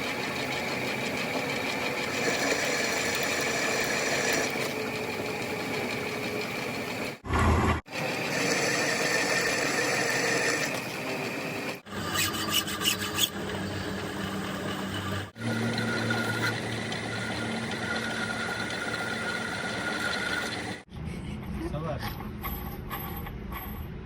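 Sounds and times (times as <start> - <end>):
machinery rasping and rubbing: 5.9 - 20.9.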